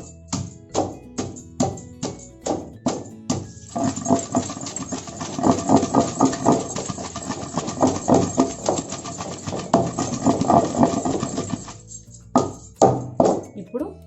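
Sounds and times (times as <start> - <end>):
pestle pounding in stone mortar: 0.0 - 13.6.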